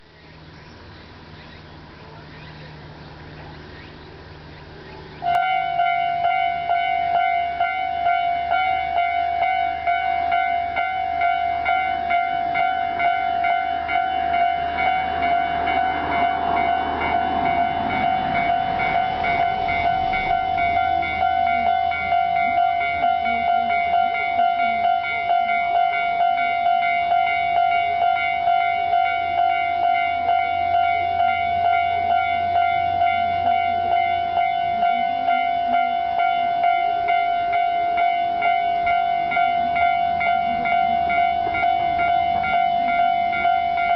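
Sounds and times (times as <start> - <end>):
train passing: 0.0 - 43.9
level-crossing alarm ringing: 5.2 - 43.9.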